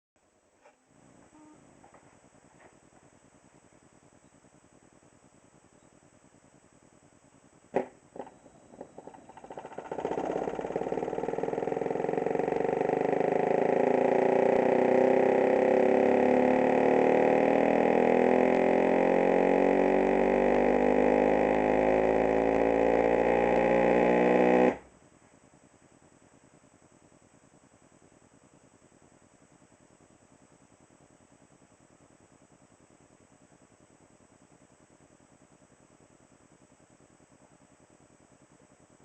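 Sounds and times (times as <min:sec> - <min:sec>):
subwoofer deep buzzy tone: 0:00.6 - 0:06.8, 0:07.4 - 0:25.0.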